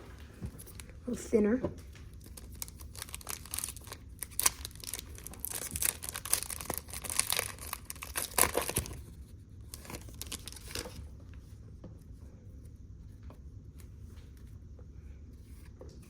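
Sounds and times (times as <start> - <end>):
wrappers tearing and crinkling: 2.1 - 9.0, 9.7 - 11.0.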